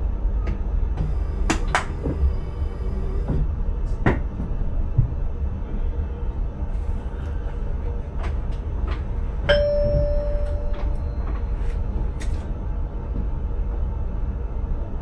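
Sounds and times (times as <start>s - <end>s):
train cab low hum: 0.0s - 15.0s
bell-like chime ding: 9.5s - 11.3s.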